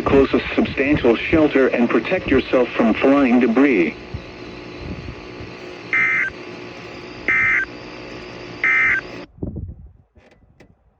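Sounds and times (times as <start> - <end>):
buzzy digital data bursts: 0.0 - 9.3
radio hiss: 0.0 - 9.3.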